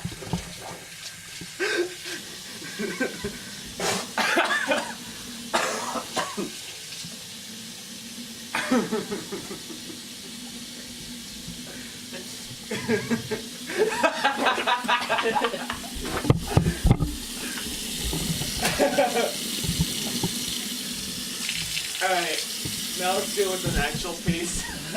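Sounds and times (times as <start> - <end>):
person coughing: 3.8 - 5.0, 5.6 - 6.5, 8.6 - 9.0.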